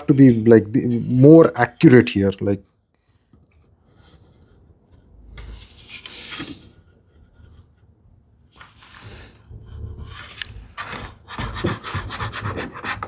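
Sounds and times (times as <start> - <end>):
scraping strokes on wood: 10.0 - 13.0.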